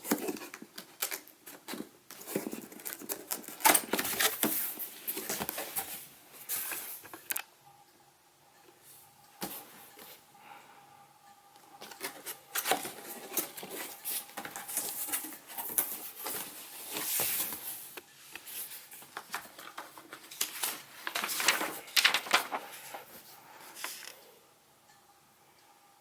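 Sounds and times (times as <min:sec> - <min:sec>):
packaging rustling and scraping: 0:00.0 - 0:07.4, 0:11.8 - 0:24.2.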